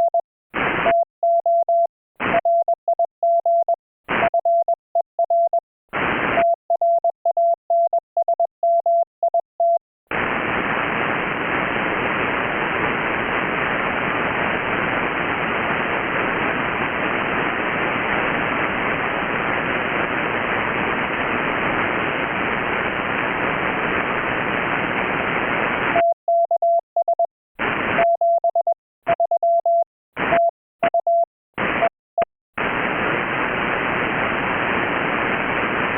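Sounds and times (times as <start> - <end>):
radio receiver hiss: 10.1 - 26.0, 32.6 - 35.9.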